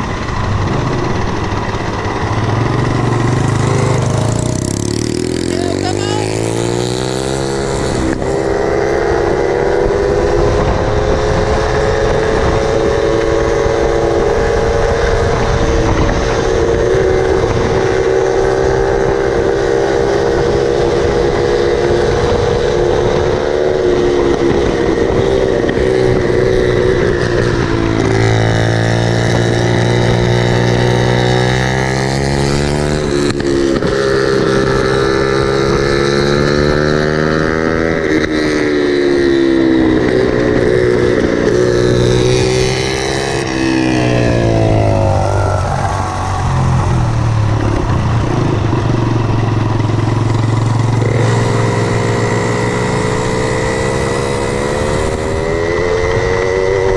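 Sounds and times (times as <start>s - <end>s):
moped engine revving: 0.0s - 56.9s.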